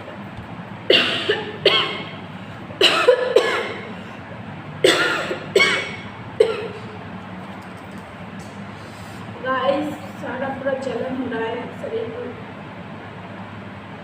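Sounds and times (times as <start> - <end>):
woman coughing: 0.9 - 2.2, 2.8 - 4.0, 4.8 - 7.0.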